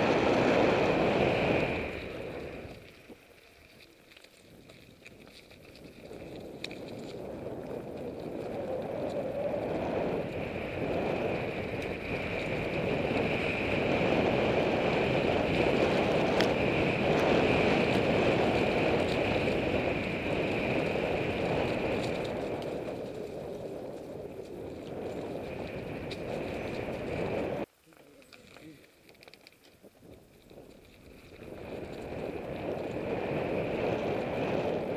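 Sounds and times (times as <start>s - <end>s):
bike tyre rumble: 0.0s - 34.9s
wind noise: 0.0s - 34.9s.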